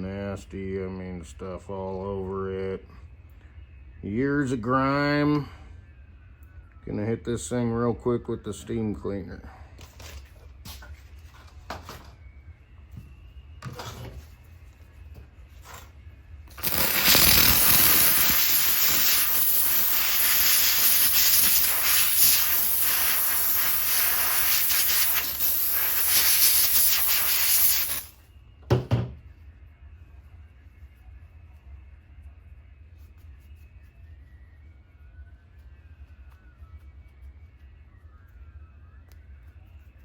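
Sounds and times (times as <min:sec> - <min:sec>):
steam cleaner hissing: 0:16.5 - 0:28.2.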